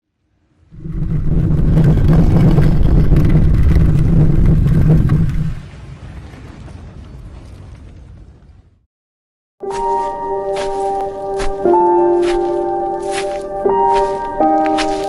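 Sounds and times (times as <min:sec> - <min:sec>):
stone door grinding open: 0:00.8 - 0:05.6.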